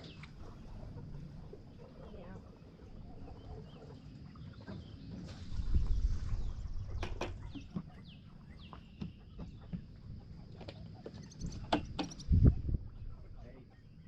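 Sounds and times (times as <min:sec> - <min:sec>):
chickens calling: 0:00.0 - 0:14.0
low rumble: 0:05.3 - 0:07.8.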